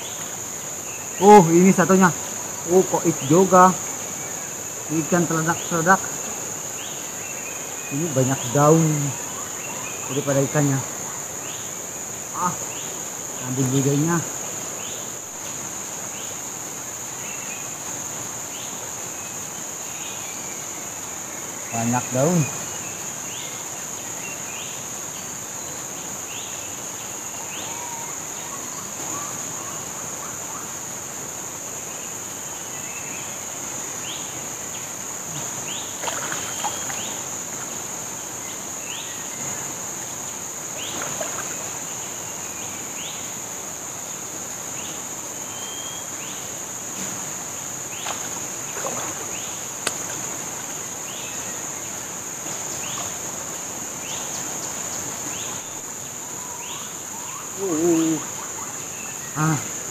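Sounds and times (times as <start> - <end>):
insects droning: 0.0 - 59.9
water splashing from a net: 35.9 - 37.7, 40.8 - 42.0, 48.0 - 50.7.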